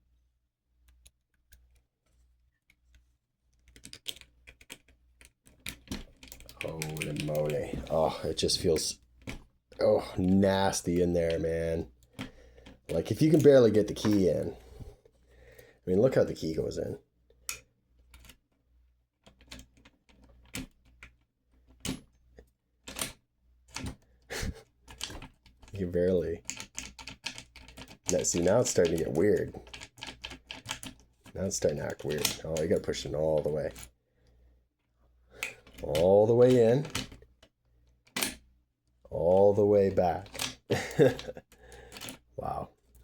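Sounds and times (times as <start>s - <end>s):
key clicking and scraping in lock: 3.6s - 8.0s, 18.0s - 18.5s, 19.2s - 22.1s, 22.8s - 24.0s, 26.4s - 31.4s, 40.2s - 42.3s.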